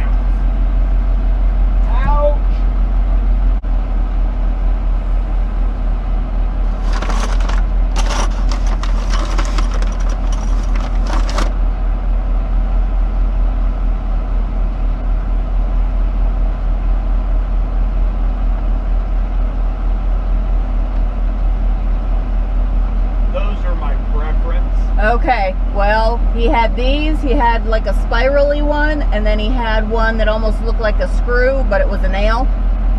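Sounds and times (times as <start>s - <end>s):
vehicle engine rumble: 0.0s - 32.9s
rustling scraping noise: 6.7s - 11.6s.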